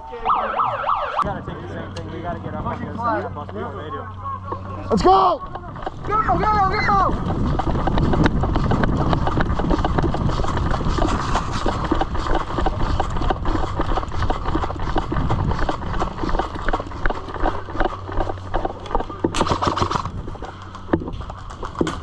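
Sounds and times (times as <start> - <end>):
footsteps running on dirt: 4.5 - 22.0.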